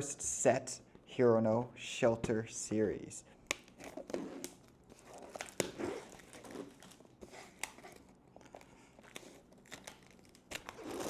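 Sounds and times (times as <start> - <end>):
packaging crinkling: 3.6 - 11.0.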